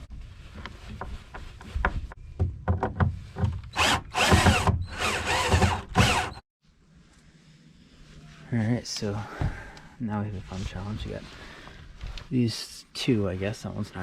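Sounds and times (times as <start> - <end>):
power drill running: 3.8 - 6.4.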